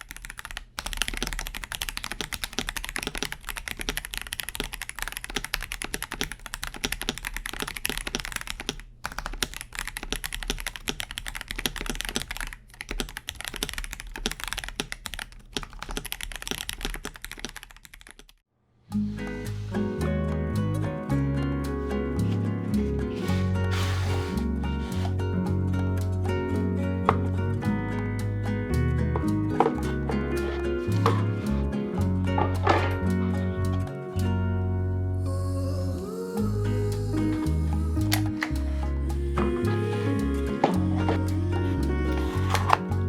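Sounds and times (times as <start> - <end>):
fast typing on mechanical keyboard: 0.0 - 18.4, 42.2 - 42.9
music: 18.9 - 43.0.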